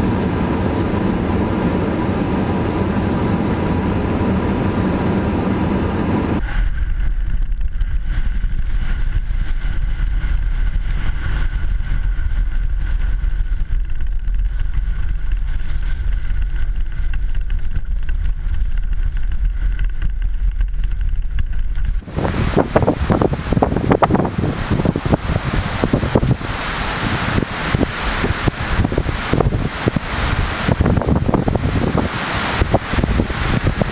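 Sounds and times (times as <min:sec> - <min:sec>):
gusting hiss of wind: 0:00.0 - 0:06.4, 0:22.0 - 0:33.9
wind buffeting microphone: 0:00.0 - 0:20.3, 0:21.8 - 0:33.9.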